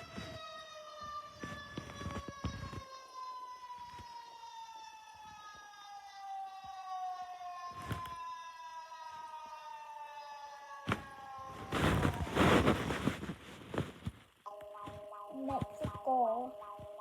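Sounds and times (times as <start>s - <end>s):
warning siren winding down: 0.0s - 12.9s.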